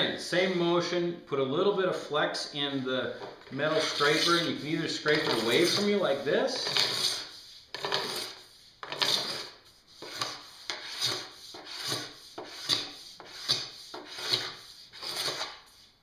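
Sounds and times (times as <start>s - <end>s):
metal scraper on snowboard base: 3.6s - 15.9s.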